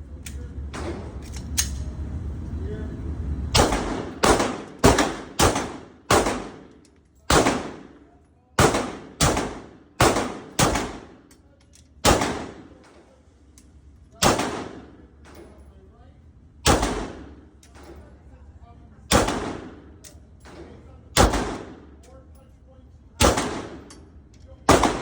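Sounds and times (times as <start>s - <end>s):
gunshots with echo: 3.6s - 6.6s, 7.3s - 8.0s, 8.6s - 11.2s, 12.0s - 12.7s, 14.2s - 15.0s, 16.7s - 17.4s, 19.1s - 19.8s, 21.2s - 21.8s, 23.2s - 23.9s, 24.7s - 25.0s.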